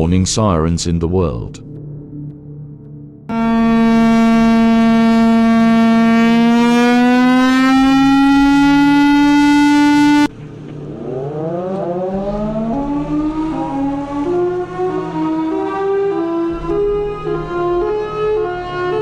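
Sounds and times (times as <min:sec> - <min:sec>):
siren winding up: 0:03.3 - 0:10.3, 0:11.1 - 0:19.0
warning siren rising in pitch: 0:03.3 - 0:19.0.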